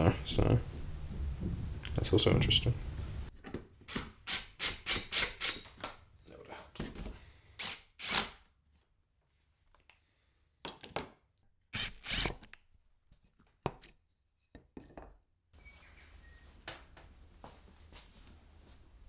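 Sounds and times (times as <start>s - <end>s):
wood knocking and scraping: 0.7s - 2.0s.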